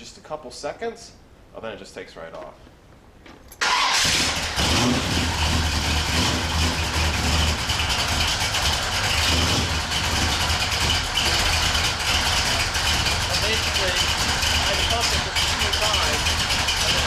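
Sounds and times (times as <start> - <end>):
car engine running: 3.6 - 17.0.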